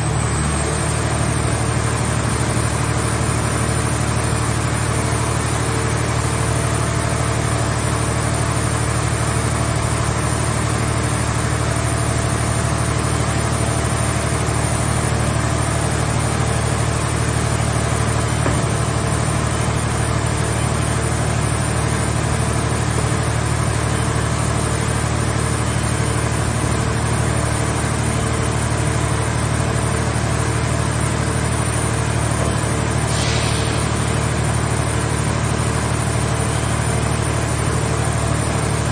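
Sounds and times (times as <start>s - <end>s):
hydraulic power unit humming: 0.0s - 38.9s
short hiss: 33.1s - 34.1s.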